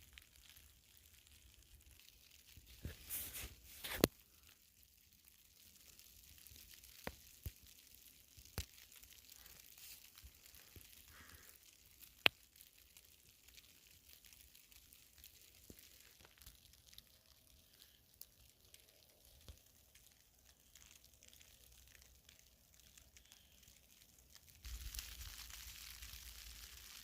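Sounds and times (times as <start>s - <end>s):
soft hiss: 2.4s - 4.8s, 6.6s - 27.0s
footsteps crunching in snow: 2.8s - 4.1s.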